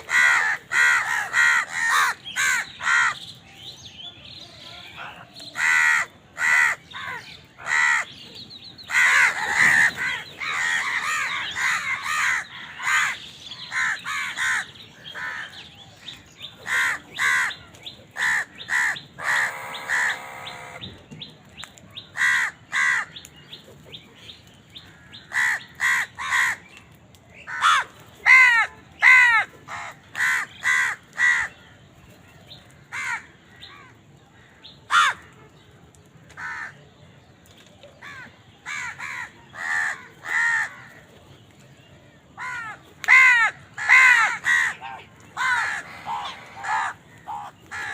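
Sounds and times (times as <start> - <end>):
crows cawing: 0.0 - 3.2, 5.4 - 8.1, 8.9 - 15.6, 16.6 - 20.8, 22.1 - 23.2, 24.9 - 26.6, 27.5 - 31.6, 32.8 - 35.3, 36.4 - 36.8, 38.0 - 41.1, 42.4 - 47.9.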